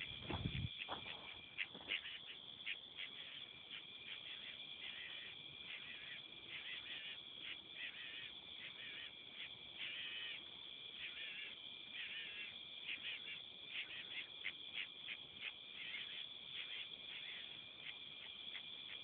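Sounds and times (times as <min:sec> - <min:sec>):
birds squawking harshly: 0:00.4 - 0:02.4, 0:09.8 - 0:10.4.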